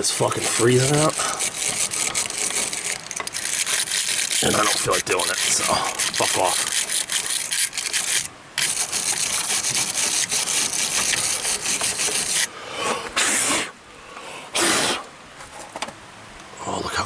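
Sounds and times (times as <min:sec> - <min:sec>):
wire brush scrubbing metal: 0:00.0 - 0:12.5.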